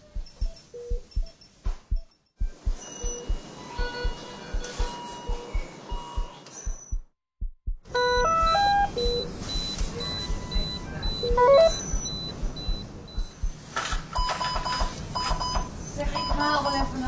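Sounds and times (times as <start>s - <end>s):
monitor beeps and alarm tones: 0.0s - 7.1s, 7.9s - 17.0s
fast repeating high beep: 0.1s - 7.1s, 7.8s - 13.6s, 14.2s - 17.0s
low even thuds: 6.2s - 7.9s, 8.9s - 13.6s.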